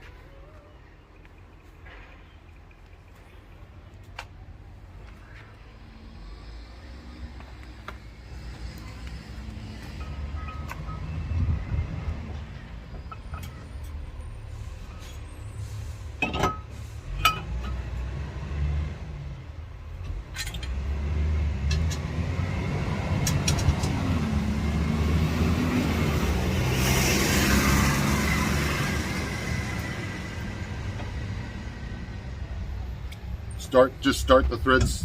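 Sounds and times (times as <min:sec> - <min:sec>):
low vehicle rumble: 0:00.0 - 0:35.0
metallic clicks and knocks: 0:23.2 - 0:24.0.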